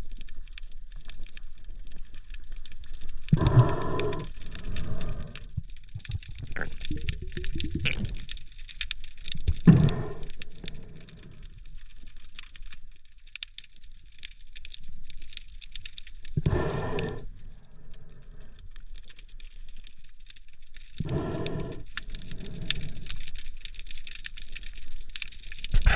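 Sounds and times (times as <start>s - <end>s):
underwater crackling and clicking: 0.0s - 25.9s
rush of bubbling: 3.2s - 11.8s, 16.3s - 18.6s, 21.0s - 23.3s.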